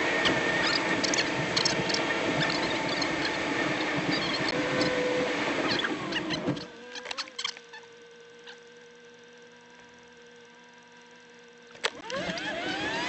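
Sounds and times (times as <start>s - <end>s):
engine hum: 0.0s - 9.2s.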